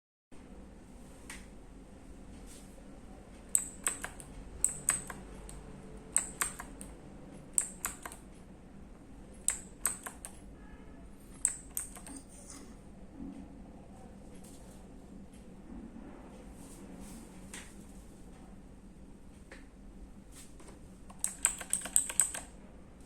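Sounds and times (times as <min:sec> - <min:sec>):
mechanical keyboard key clicks: 0:03.5 - 0:08.2, 0:09.4 - 0:10.4, 0:11.3 - 0:12.2, 0:21.1 - 0:22.5.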